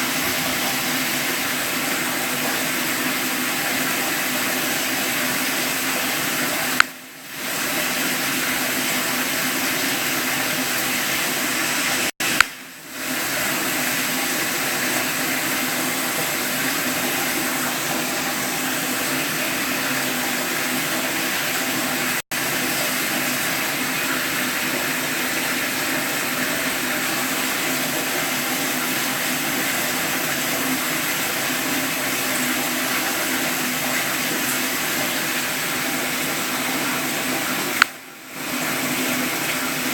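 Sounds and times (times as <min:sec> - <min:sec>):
running water rushing: 0:00.0 - 0:39.9
sharp click: 0:12.2 - 0:12.6, 0:37.8 - 0:38.0.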